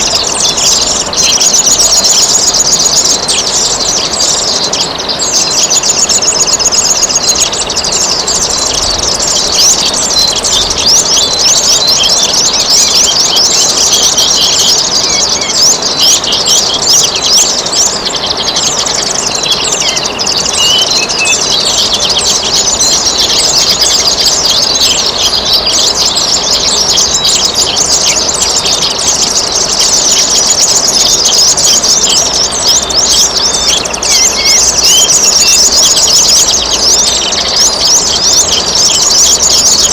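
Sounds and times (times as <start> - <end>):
songbirds chirping: 0.0 - 39.9
trickling water: 0.0 - 39.9.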